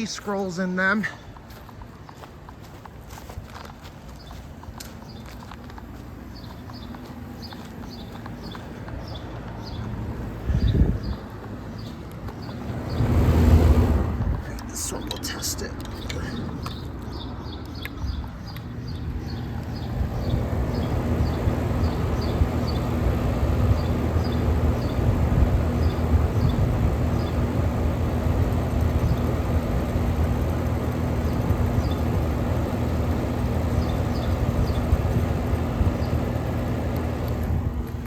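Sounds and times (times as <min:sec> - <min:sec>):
low compressor hum: 0:00.0 - 0:38.0
air conditioner fan rushing: 0:01.3 - 0:38.0.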